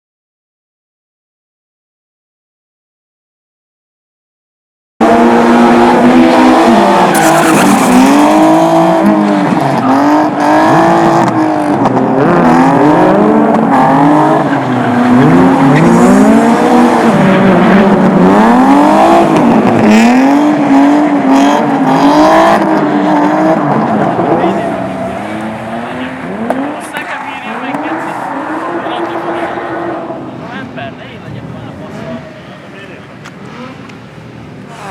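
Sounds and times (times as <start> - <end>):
race car engine revving: 5.0 - 34.9
tyres squealing: 6.9 - 8.7.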